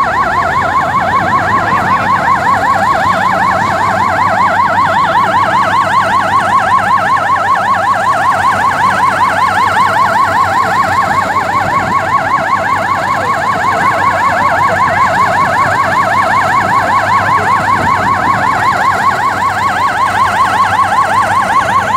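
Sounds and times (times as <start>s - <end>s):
siren on fast yelp: 0.0s - 21.9s.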